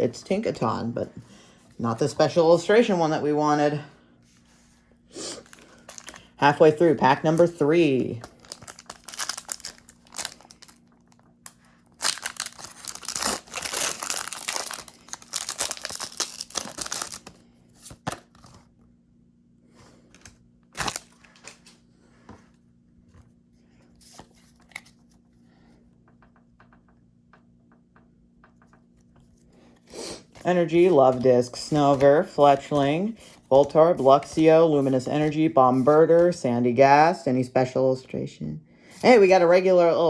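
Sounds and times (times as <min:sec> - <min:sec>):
wrapper tearing and crinkling: 0:05.4 - 0:06.3, 0:08.1 - 0:17.4, 0:20.7 - 0:21.7
cards rustling and clicking: 0:05.4 - 0:18.7, 0:24.0 - 0:25.3, 0:28.5 - 0:36.4.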